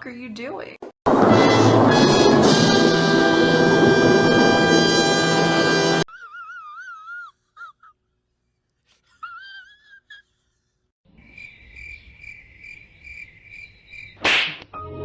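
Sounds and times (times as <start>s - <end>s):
loud noise burst: 1.1s - 5.6s
cricket chirping: 11.1s - 14.2s.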